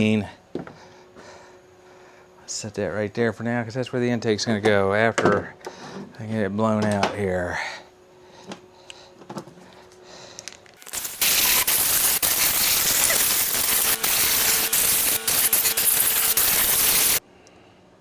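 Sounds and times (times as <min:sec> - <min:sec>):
compressed air blow gun hissing: 0:10.8 - 0:17.2.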